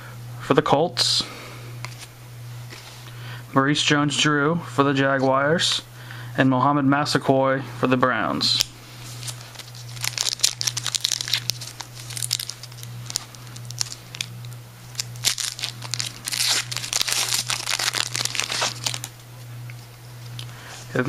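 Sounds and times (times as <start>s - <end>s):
low hum: 8.6s - 21.0s
wrapper tearing and crinkling: 9.0s - 19.2s.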